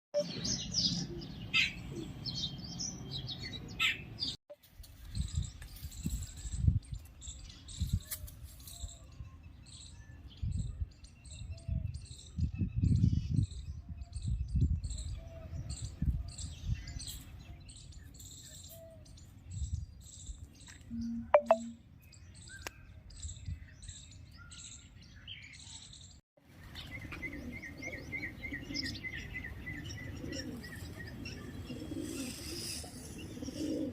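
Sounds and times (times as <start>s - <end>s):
small birds chirping: 0.2s - 33.9s.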